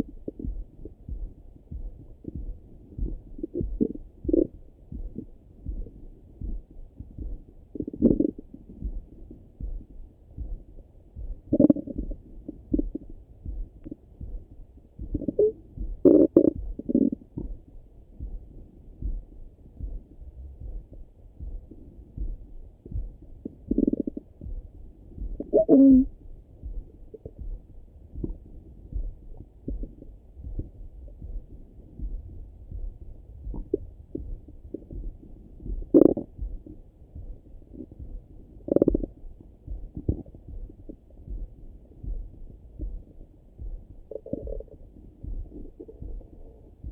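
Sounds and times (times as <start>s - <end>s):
faint low thuds: 0.0s - 46.9s
heartbeat thumps: 0.0s - 46.9s
stomach gurgle: 7.7s - 8.5s, 11.5s - 13.1s, 15.1s - 17.5s, 23.4s - 24.3s, 25.4s - 26.1s, 35.6s - 36.4s, 38.6s - 39.2s, 44.1s - 46.9s
stomach gurgles through stethoscope: 11.5s - 12.2s, 15.2s - 17.3s, 25.4s - 26.1s, 35.9s - 36.3s, 38.6s - 39.1s, 44.1s - 44.8s
faint bubbling of the gut: 25.4s - 26.1s.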